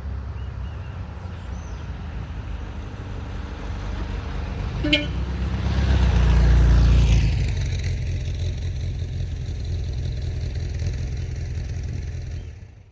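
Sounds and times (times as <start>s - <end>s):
van engine running: 3.3s - 12.9s.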